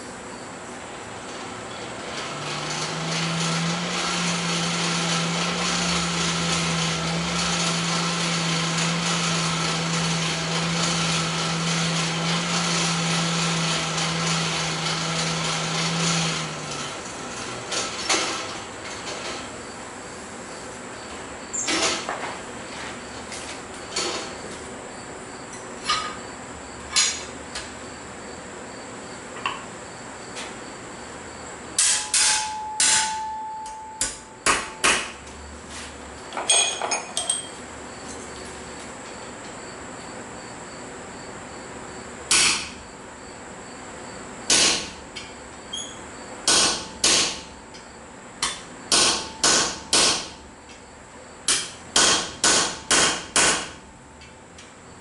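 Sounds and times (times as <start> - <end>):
hammer striking steel on anvil: 31.8 - 35.2, 48.4 - 50.3.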